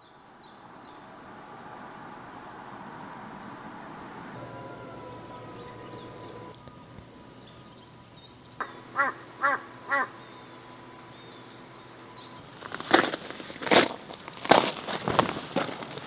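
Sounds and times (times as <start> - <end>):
faint songbird chirps: 0.0 - 1.2, 3.9 - 13.4
crow cawing: 9.0 - 10.2
loud crunching rustles: 12.3 - 16.0.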